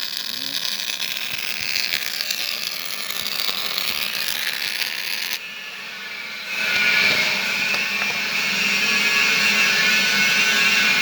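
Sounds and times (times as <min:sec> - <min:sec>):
welding arc crackling and hissing: 0:00.0 - 0:05.4.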